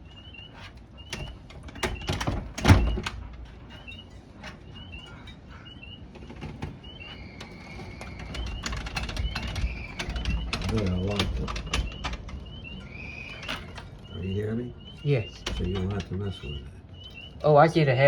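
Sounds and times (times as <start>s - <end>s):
sharp clicks and knocks: 6.1s - 14.2s, 14.9s - 17.4s.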